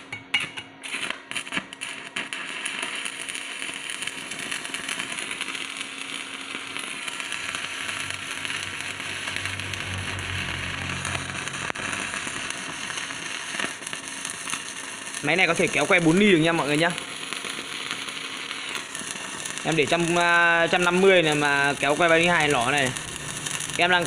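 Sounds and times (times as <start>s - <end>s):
welding electrode strikes: 0.0s - 24.0s
arc welding crackle: 0.8s - 24.0s.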